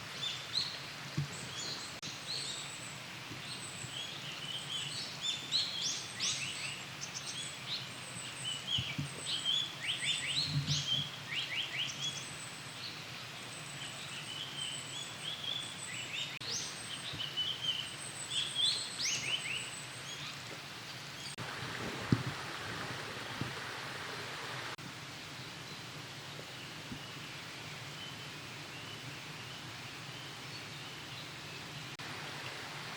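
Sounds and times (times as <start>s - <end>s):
woodland background hiss: 0.0s - 32.9s.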